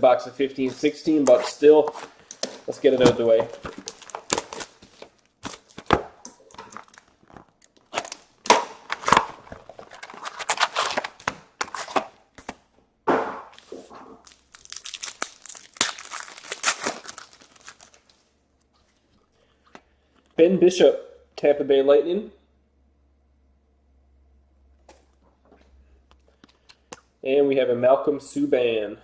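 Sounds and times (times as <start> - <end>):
foil packs tearing and crinkling: 0.6 - 12.1, 13.6 - 18.2.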